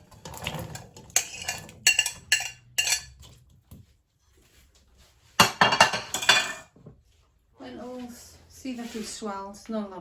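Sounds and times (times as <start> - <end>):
utensils clattering against pot: 0.0 - 3.6, 5.4 - 6.8.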